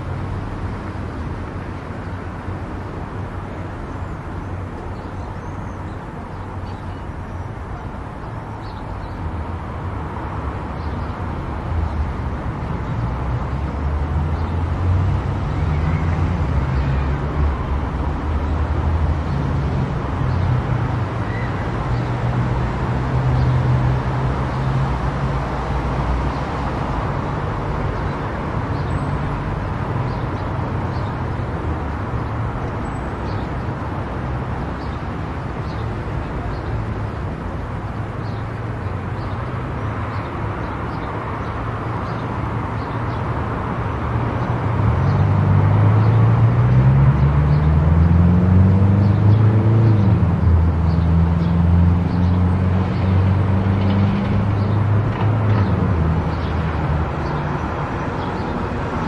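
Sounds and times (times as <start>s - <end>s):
car engine hum and road noise: 41.2s - 59.0s.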